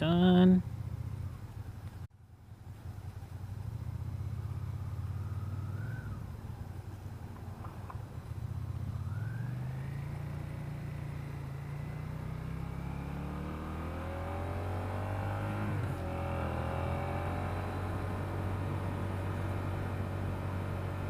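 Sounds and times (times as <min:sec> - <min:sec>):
motorcycle engine accelerating: 0:00.1 - 0:02.0, 0:02.6 - 0:21.0.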